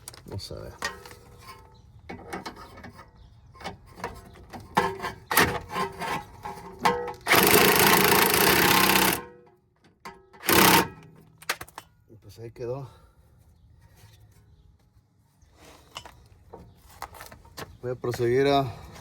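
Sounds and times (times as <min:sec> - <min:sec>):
impact wrench hammering: 0:07.2 - 0:09.3, 0:10.4 - 0:11.2.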